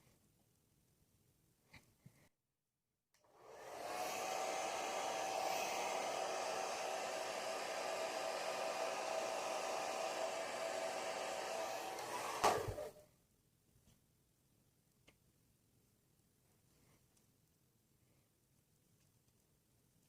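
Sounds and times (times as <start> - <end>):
hair dryer blowing: 3.2 - 13.0.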